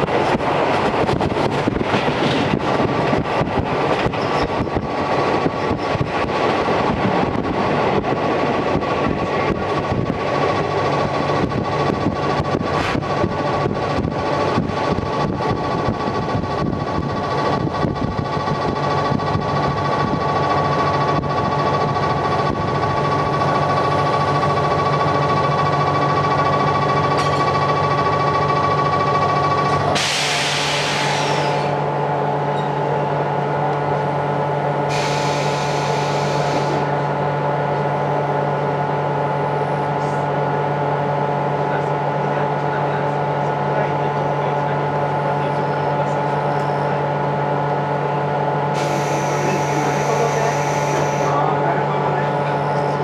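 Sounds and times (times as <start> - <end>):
train wheels clicking over rail joints: 0.0 - 31.8
compressed-air hiss: 30.0 - 31.7.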